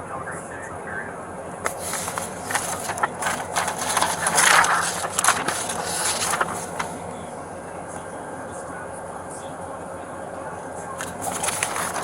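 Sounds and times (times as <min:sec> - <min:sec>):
irregular crackling and clicking: 0:01.6 - 0:07.0, 0:11.0 - 0:12.0.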